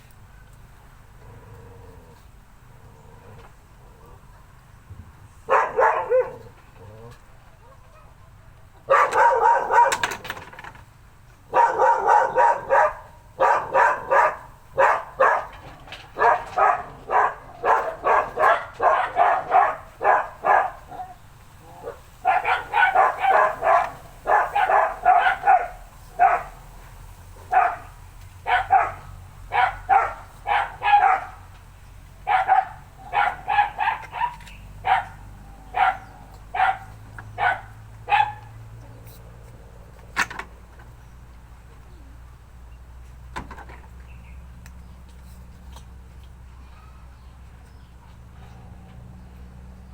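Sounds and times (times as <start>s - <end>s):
dog barking: 5.5s - 6.6s, 8.9s - 10.2s, 11.5s - 26.6s, 27.4s - 31.5s, 32.2s - 38.6s.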